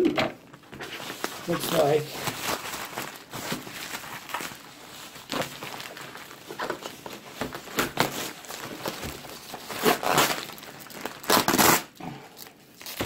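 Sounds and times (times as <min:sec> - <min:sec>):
wrapping rustling and crinkling: 0:00.4 - 0:13.0.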